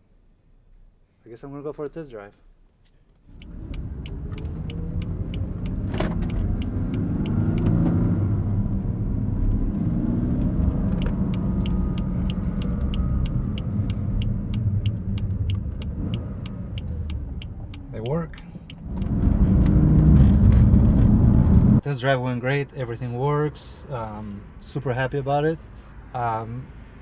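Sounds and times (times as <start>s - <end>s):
regular clicking: 3.3s - 20.2s
car engine accelerating: 3.3s - 21.8s.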